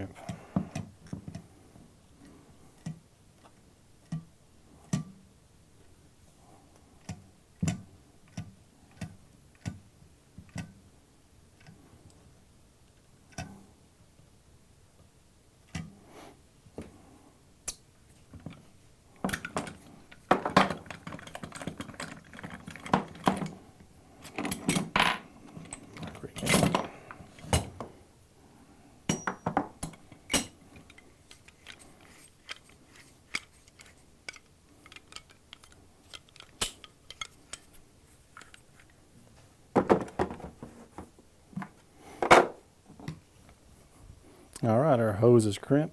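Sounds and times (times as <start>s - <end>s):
metal clinking and clattering: 19.2s - 23.6s.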